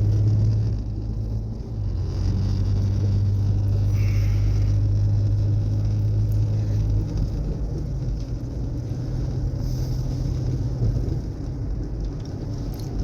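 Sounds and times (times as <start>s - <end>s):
car engine hum: 0.0s - 13.0s
road noise inside car: 0.0s - 13.0s.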